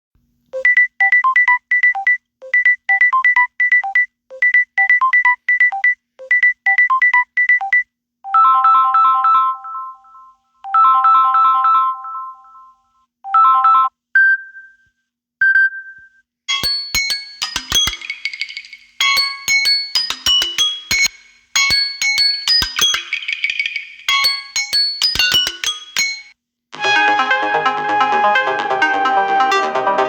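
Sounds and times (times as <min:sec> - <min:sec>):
chiming ringtone pattern: 0:00.6 - 0:12.8, 0:16.5 - 0:26.3
electronic beeping ringtone melody: 0:16.5 - 0:26.3.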